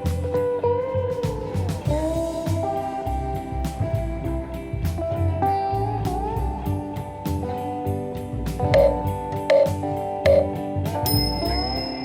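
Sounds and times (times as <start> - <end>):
guitar tune over a steady beat: 0.0 - 12.0.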